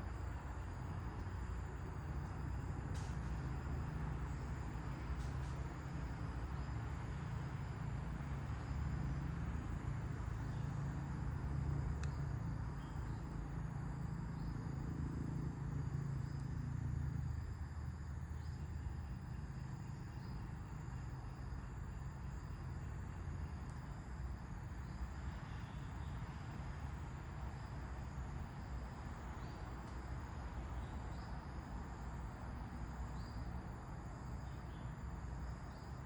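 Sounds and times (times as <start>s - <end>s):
crickets chirping: 0.0s - 36.0s.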